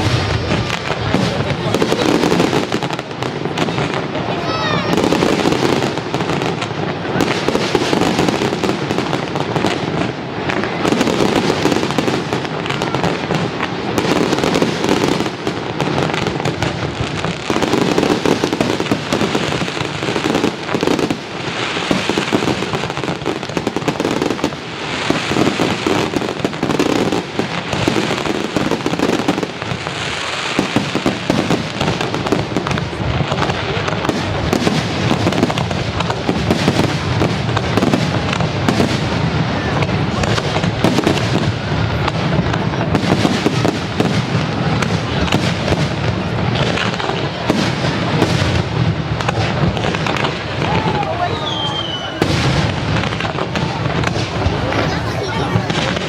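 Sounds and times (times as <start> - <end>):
fireworks bursting and crackling: 0.0 - 56.0.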